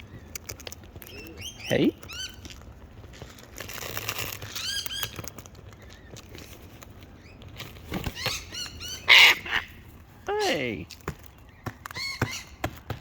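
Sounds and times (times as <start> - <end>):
bird chirps: 0.0 - 2.5, 4.5 - 6.2, 8.1 - 9.8, 11.2 - 12.6
birds rustling and wing flapping: 0.0 - 13.0.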